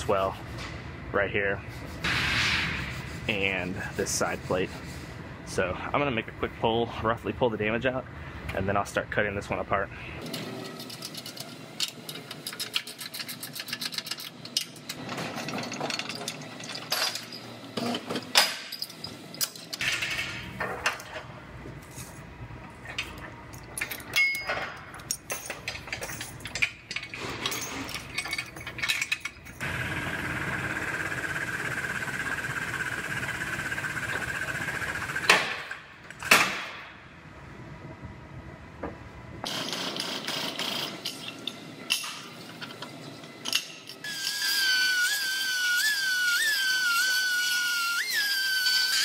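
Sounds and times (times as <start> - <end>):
metal clanks and rattles: 10.2 - 21.3, 22.8 - 29.6
machine running: 29.6 - 35.4.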